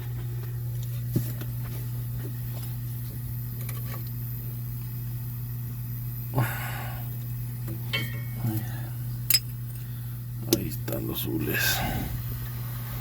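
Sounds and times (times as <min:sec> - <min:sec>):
steady low hum: 0:00.0 - 0:13.0
light metallic clinks: 0:07.9 - 0:08.6.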